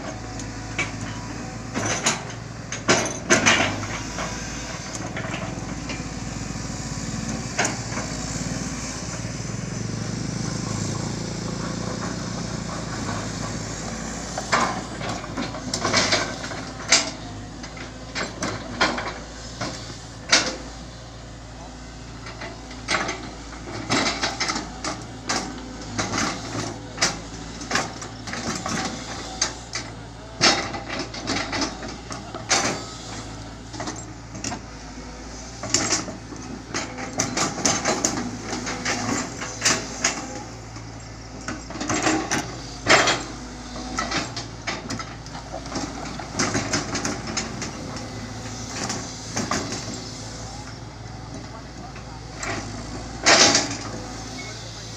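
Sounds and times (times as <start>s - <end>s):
excavator diesel engine running: 0.0s - 54.9s
metal and wood knocks and clanks: 0.7s - 4.3s.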